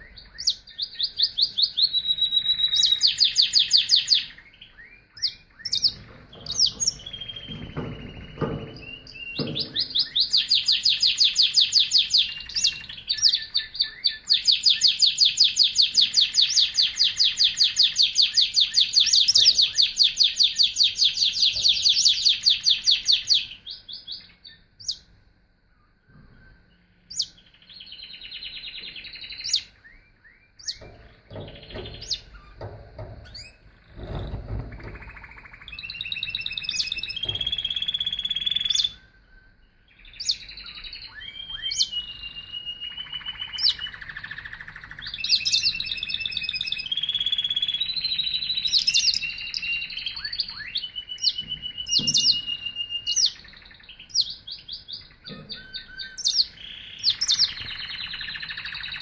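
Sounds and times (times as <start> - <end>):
canary singing trills: 0.0 - 25.2, 25.8 - 59.0.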